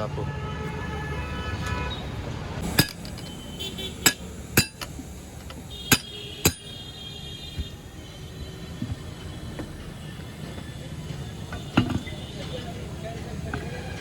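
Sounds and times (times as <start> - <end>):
metal tools clanking on metal: 2.6 - 5.0, 5.9 - 6.7, 10.5 - 12.4.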